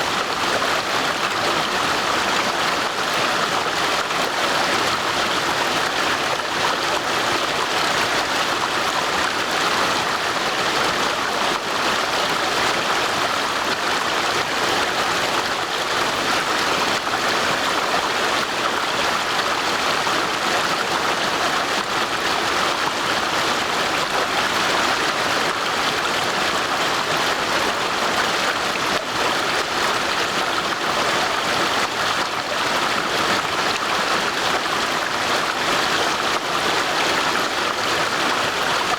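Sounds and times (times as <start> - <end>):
stream rushing over stones: 0.0 - 38.9.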